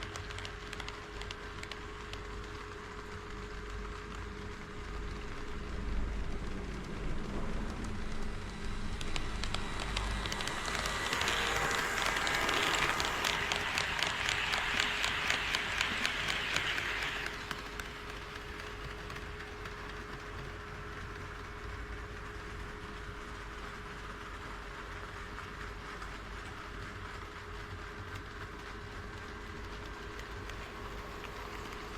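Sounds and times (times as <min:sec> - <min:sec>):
model train wheels clicking: 0:00.0 - 0:31.9.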